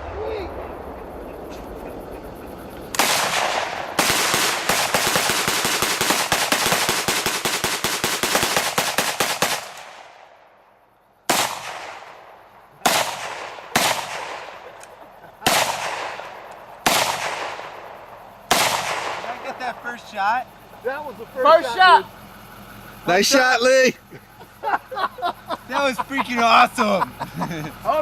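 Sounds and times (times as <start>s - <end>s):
rifle shots with echo: 0.0s - 10.6s, 11.3s - 20.0s
rapid automatic gunfire: 2.9s - 10.2s, 12.8s - 14.7s, 15.4s - 17.9s, 18.5s - 19.8s.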